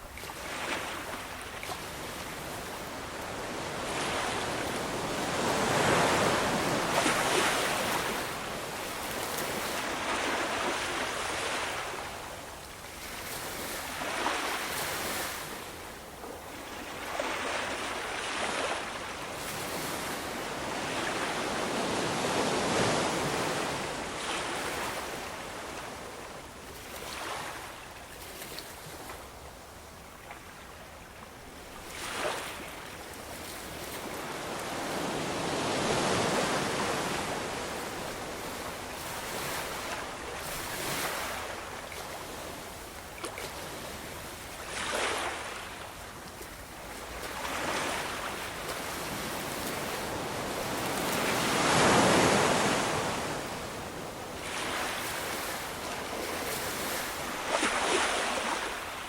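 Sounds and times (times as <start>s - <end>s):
ocean waves breaking: 0.4s - 12.0s, 31.8s - 32.9s, 33.6s - 42.7s, 43.9s - 45.8s, 47.0s - 59.0s.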